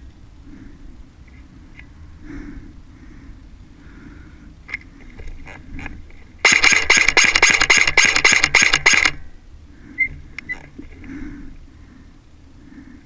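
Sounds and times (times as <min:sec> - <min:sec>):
airsoft gun firing burst: 0:06.4 - 0:09.2.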